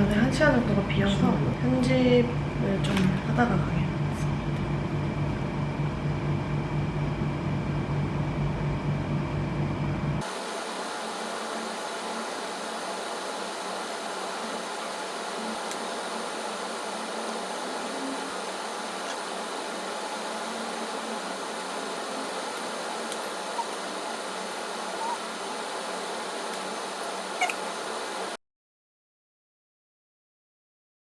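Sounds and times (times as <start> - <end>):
faint hum: 0.0 - 28.4
airy hiss: 10.2 - 28.4.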